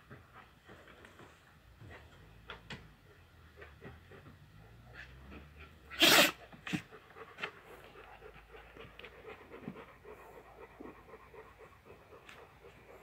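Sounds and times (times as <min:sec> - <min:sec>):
dog sneezing: 0:05.9 - 0:06.8
dog huffing through nose: 0:05.9 - 0:07.5.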